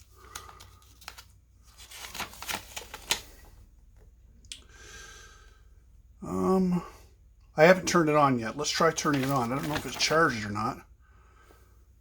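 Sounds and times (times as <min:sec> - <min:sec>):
paper rustling: 0:00.0 - 0:03.6, 0:08.6 - 0:10.5.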